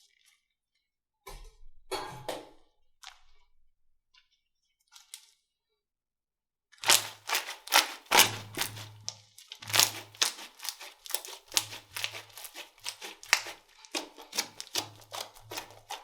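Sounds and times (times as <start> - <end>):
slime crackling and popping: 6.8 - 16.0.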